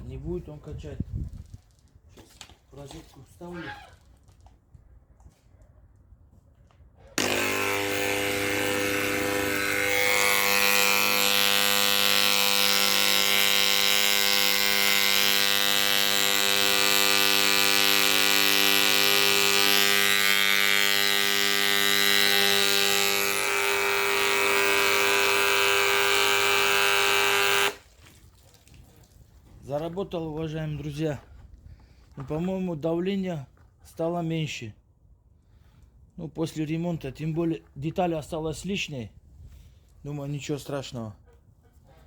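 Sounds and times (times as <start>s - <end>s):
vibration pump buzzing: 7.2s - 27.8s.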